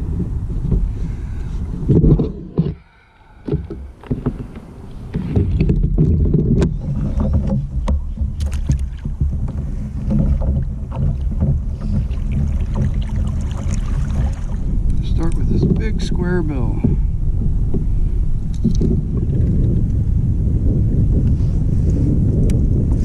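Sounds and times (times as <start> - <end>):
kayak hull and drive rumbling: 0.0 - 23.0.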